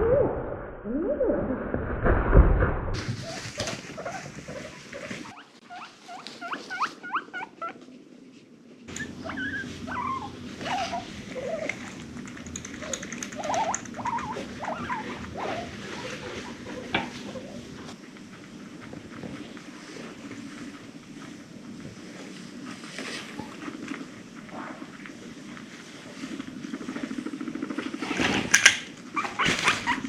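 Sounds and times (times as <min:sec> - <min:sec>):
guinea pig squeaking: 0:03.1 - 0:07.8, 0:08.9 - 0:17.8, 0:29.1 - 0:30.0
light clicks and rustling: 0:11.6 - 0:14.2.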